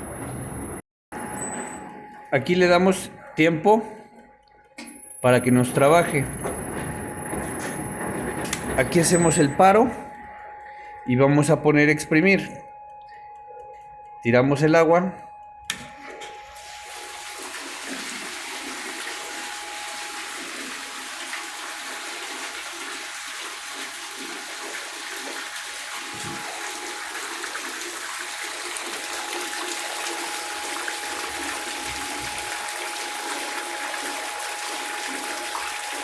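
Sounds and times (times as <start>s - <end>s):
thin steady tone: 1.4s - 36.0s
water draining through hose: 16.6s - 36.0s.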